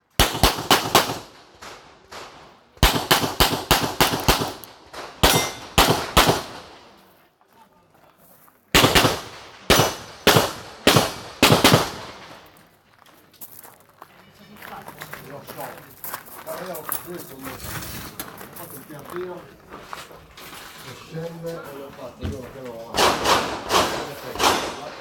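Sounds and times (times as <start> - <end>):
handgun shots: 2.8 - 6.6, 8.8 - 12.0, 23.0 - 24.9.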